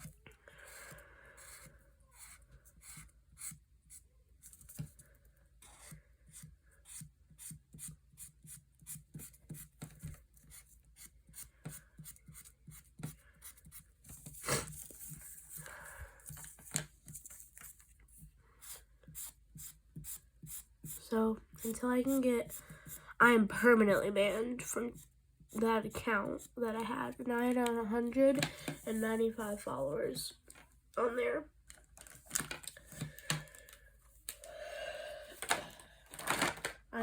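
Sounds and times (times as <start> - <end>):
drawing tool scratching paper: 0.7 - 4.0.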